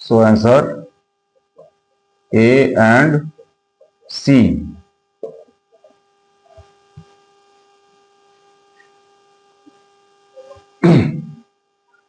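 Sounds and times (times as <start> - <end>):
faint electrical hum: 0.0 - 12.0
burst of man's voice: 10.8 - 11.4.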